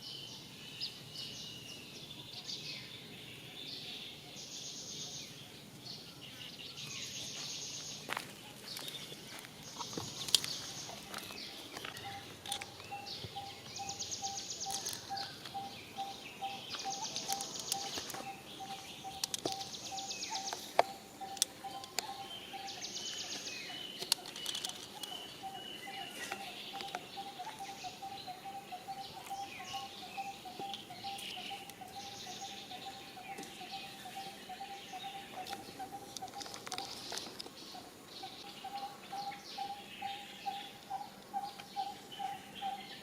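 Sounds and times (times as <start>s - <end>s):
sharp clicks: 19.1s - 19.8s.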